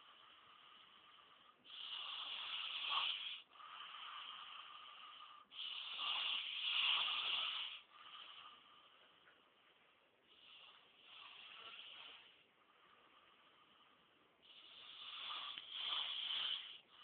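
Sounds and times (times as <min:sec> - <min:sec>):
man snoring: 0:00.0 - 0:08.6, 0:10.3 - 0:12.4, 0:14.4 - 0:17.0.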